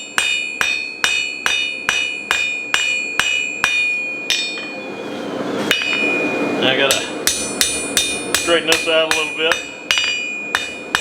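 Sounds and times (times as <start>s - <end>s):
hammer striking steel: 0.0s - 4.8s, 5.6s - 11.0s
anvil ringing: 0.0s - 4.9s, 5.6s - 11.0s.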